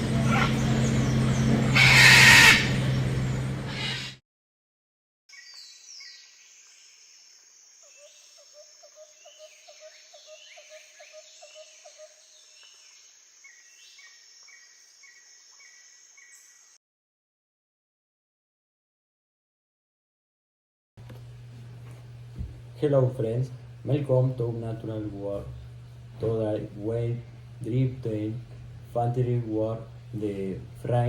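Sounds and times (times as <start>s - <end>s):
loud rushing noise with low hum: 0.0s - 4.2s
high insect buzz: 5.3s - 16.8s.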